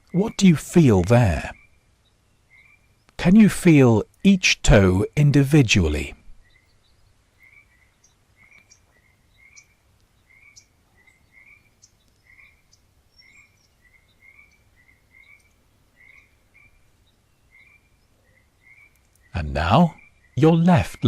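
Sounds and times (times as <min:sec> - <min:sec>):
frogs croaking: 0:00.0 - 0:21.0.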